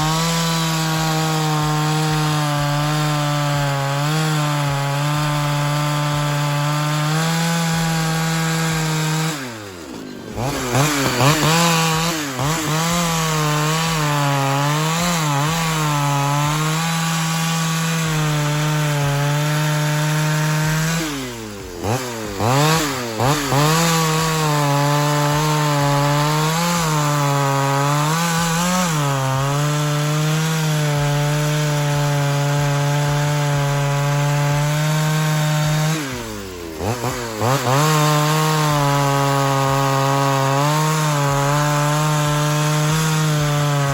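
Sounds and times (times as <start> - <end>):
two-stroke chainsaw revving: 0.0 - 43.9.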